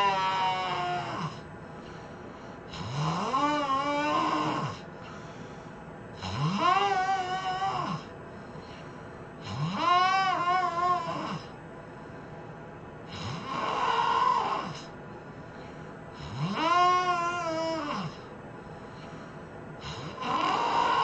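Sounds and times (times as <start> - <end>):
man snoring loudly: 0.0 - 1.4, 2.7 - 4.8, 6.2 - 8.1, 9.4 - 11.5, 13.1 - 14.9, 16.2 - 18.3, 19.8 - 21.0.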